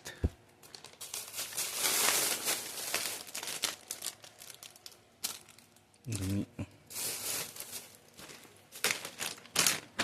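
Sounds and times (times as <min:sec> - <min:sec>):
plastic wrappers crinkling: 0:00.0 - 0:10.0.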